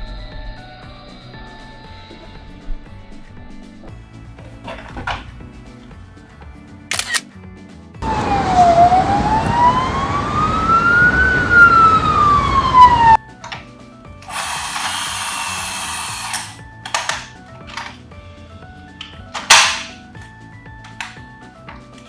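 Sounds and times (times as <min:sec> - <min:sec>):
click: 0:06.9 - 0:07.2, 0:13.4 - 0:13.6, 0:14.2 - 0:18.0, 0:20.9 - 0:21.2
toy electronic siren wailing: 0:08.0 - 0:13.2, 0:14.3 - 0:16.6
high whirring hiss: 0:14.2 - 0:18.0.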